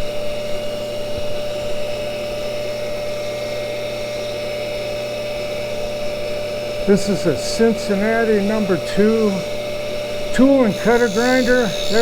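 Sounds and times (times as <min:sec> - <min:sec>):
grinder whining: 0:03.9 - 0:12.0.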